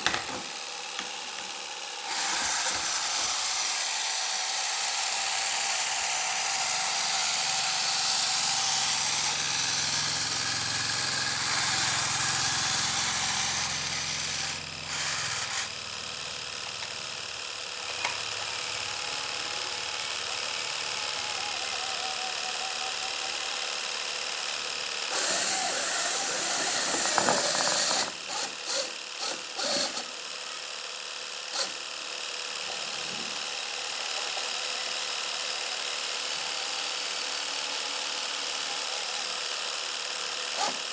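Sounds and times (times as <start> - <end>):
small motor whirring: 0.0 - 40.9.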